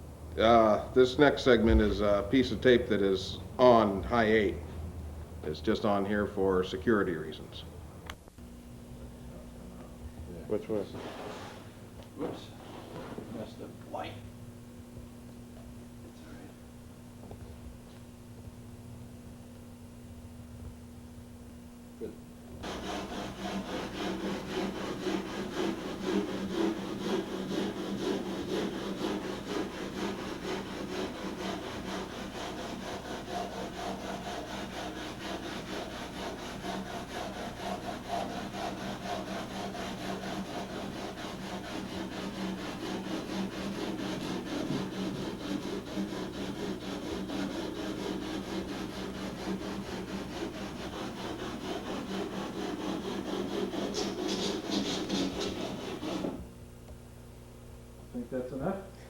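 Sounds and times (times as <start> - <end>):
steady low hum: 0.0 - 59.0
tool rasping on airframe: 22.6 - 56.5.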